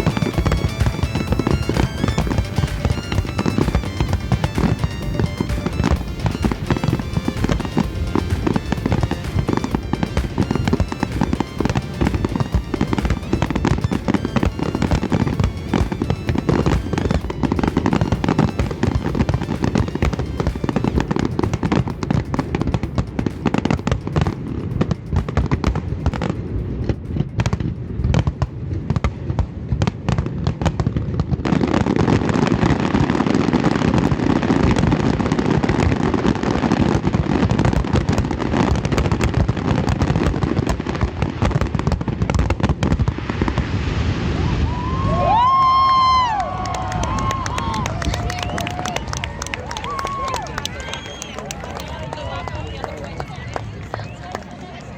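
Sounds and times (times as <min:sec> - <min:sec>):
music playing: 0:00.0 - 0:29.2
fireworks bangs and crackles: 0:00.0 - 0:54.9.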